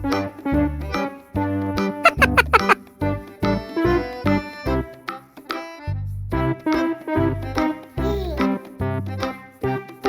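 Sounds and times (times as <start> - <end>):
keyboard tune over bass line: 2.0 - 2.8.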